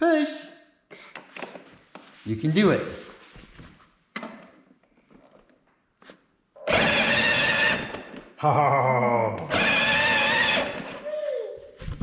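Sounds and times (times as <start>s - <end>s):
electric toy car motors whining: 6.6s - 8.2s, 9.5s - 11.0s.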